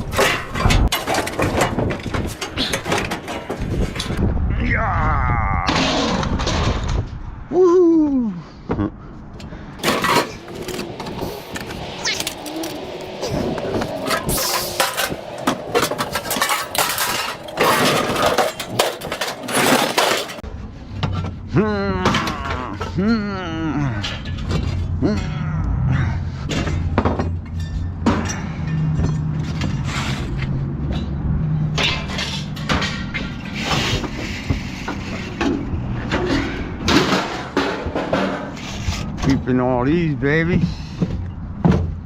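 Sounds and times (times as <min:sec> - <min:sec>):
knocks and clatters of handling: 0:00.0 - 0:04.2, 0:09.8 - 0:23.0, 0:24.0 - 0:25.3, 0:26.4 - 0:39.5
scrap metal clanking: 0:00.0 - 0:04.2, 0:09.8 - 0:21.5, 0:23.9 - 0:25.4, 0:26.4 - 0:39.5
engine running: 0:09.8 - 0:20.4.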